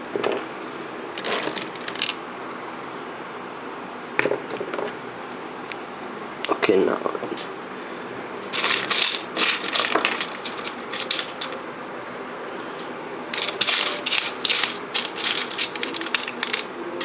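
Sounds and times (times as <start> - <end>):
plastic parts clicking and rattling: 1.2 - 2.2, 8.5 - 11.6, 13.3 - 16.7.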